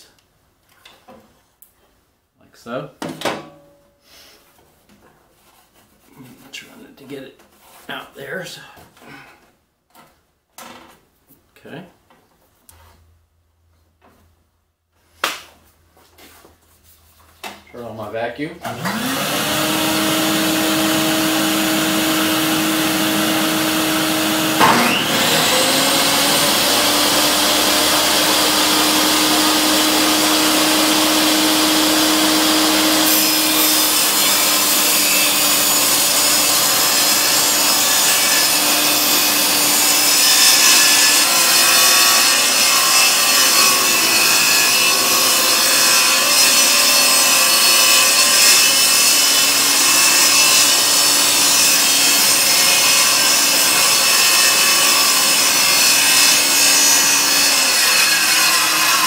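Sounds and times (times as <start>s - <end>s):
saw blade cutting wood: 18.6s - 59.0s
shop vacuum humming: 18.7s - 40.1s
table saw motor spinning: 18.7s - 59.0s.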